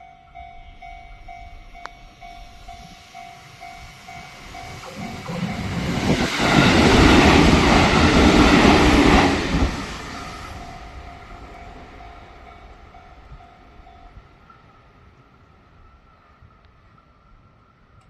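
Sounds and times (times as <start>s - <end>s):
level crossing warning bell: 0.0s - 6.3s, 10.1s - 15.1s
electric train passing: 0.0s - 18.0s.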